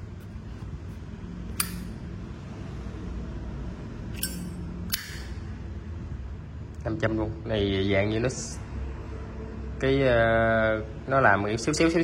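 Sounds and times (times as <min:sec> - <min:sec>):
metal lighter clicks: 0:04.2 - 0:05.3.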